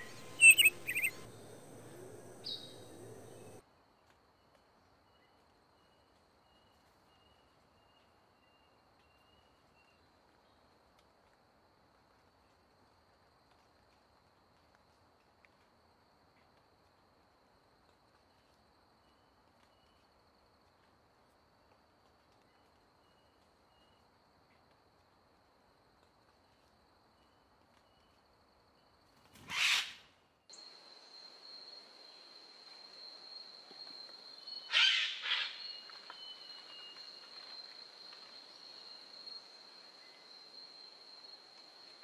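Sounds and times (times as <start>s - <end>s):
faint repeated chirps: 0.0s - 3.6s.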